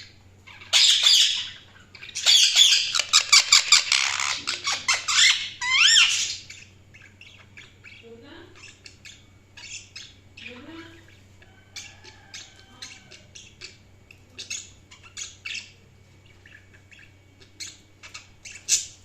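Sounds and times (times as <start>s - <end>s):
budgies chirping and squawking: 0.0s - 19.0s
low steady hum: 0.0s - 19.0s.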